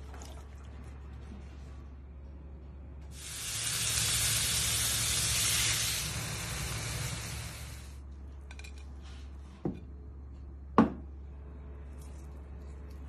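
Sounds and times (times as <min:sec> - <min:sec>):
chicken sizzling: 0:03.1 - 0:08.0.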